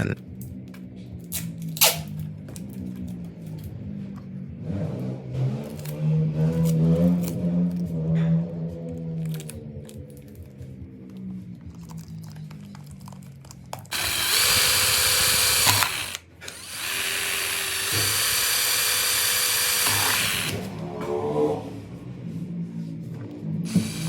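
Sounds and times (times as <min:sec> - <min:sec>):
power drill running: 0:13.9 - 0:20.8, 0:23.7 - 0:24.0.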